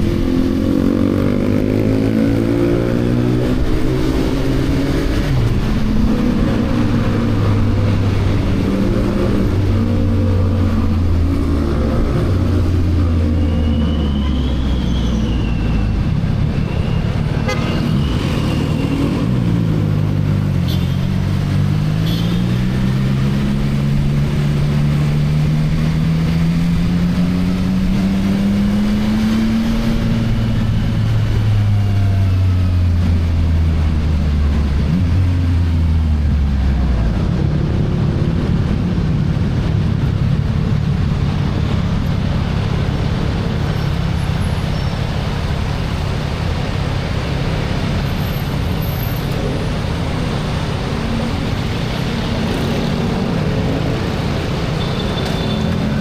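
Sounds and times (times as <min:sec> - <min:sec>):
motorcycle engine revving: 0:49.1 - 0:56.0.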